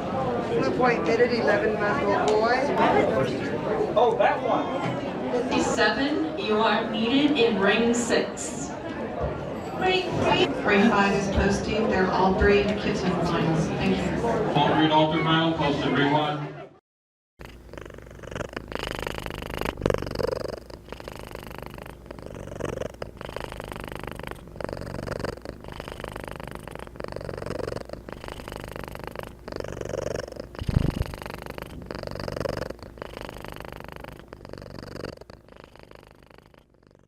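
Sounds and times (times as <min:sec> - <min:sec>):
cat purring: 0:17.4 - 0:37.0.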